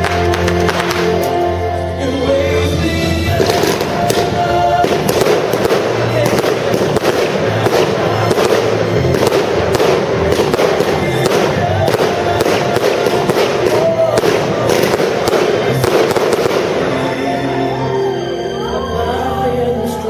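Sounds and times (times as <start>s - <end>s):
fireworks bangs and crackling: 0.0s - 1.6s, 3.0s - 17.5s
music: 0.0s - 20.0s.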